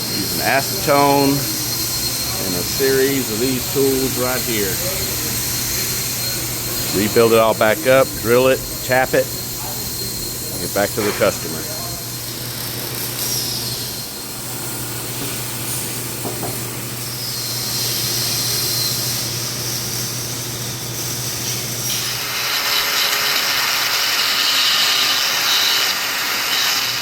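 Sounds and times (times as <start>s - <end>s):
harsh grinding of metal: 0.0s - 14.1s
power tool humming: 0.0s - 15.4s, 21.9s - 27.0s
hiss: 9.3s - 27.0s.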